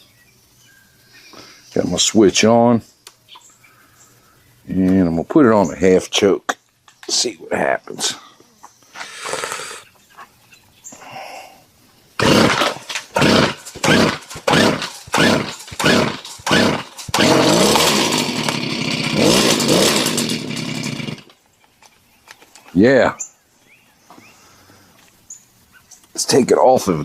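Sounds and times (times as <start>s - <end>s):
two-stroke edger engine starting: 12.2s - 21.3s.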